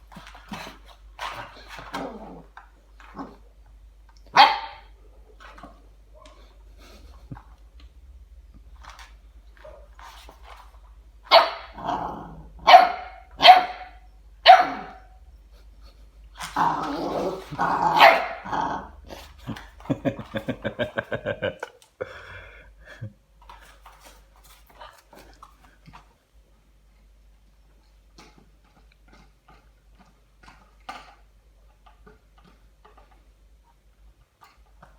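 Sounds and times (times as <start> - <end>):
puppy barking: 4.3 - 5.0, 11.3 - 11.8, 12.6 - 15.2, 17.8 - 18.5
low growly barks: 16.5 - 19.2.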